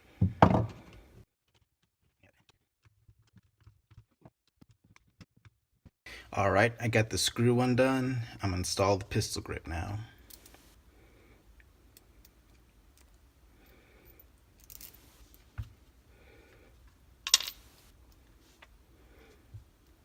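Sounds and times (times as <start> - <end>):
gun parts being handled: 14.1 - 15.6, 17.2 - 18.7.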